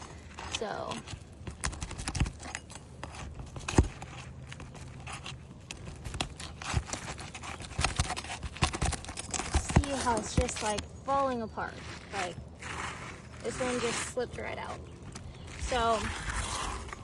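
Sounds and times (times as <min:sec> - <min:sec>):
shingle tearing and breaking: 0:00.0 - 0:17.0
tool scraping under roof shingles: 0:00.0 - 0:17.0.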